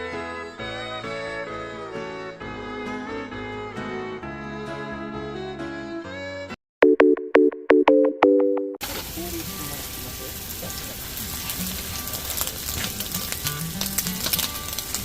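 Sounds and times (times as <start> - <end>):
food sizzling in a frying pan: 8.8 - 15.0.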